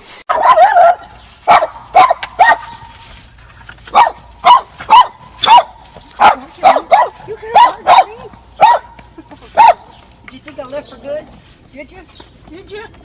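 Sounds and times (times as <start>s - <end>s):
dog yelping barks: 0.3s - 3.1s, 3.8s - 10.0s.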